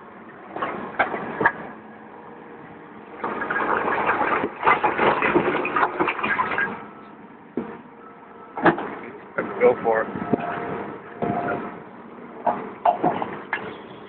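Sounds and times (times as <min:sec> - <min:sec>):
bucket scraping: 0:03.2 - 0:06.9.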